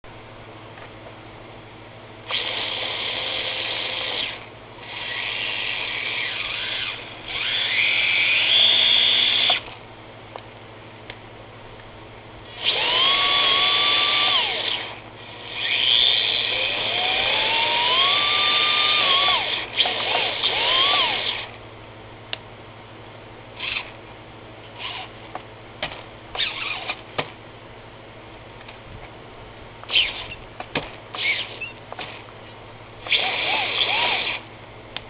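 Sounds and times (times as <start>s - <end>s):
small electric motors whining: 2.3s - 9.8s, 12.5s - 21.6s, 23.6s - 23.9s, 24.8s - 25.1s, 26.3s - 27.0s, 29.8s - 30.4s, 31.1s - 32.2s, 33.0s - 34.5s.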